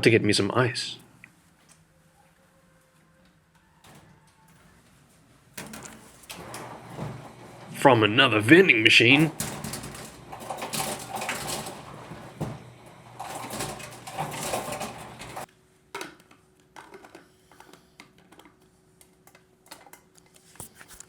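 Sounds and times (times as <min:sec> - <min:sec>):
ice machine rattling: 0:05.6 - 0:15.5.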